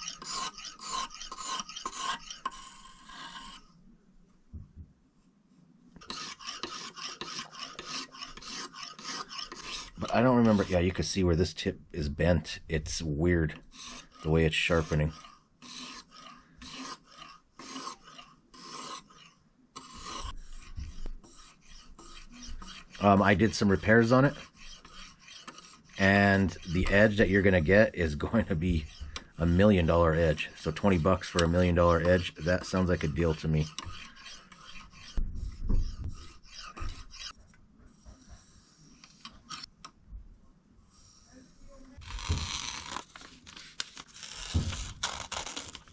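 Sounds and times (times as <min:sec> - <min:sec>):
knife blade scraping abrasive: 0:00.0 - 0:03.7, 0:06.0 - 0:10.8, 0:13.7 - 0:37.4
knife sharpening strokes: 0:15.1 - 0:23.0, 0:33.6 - 0:35.2.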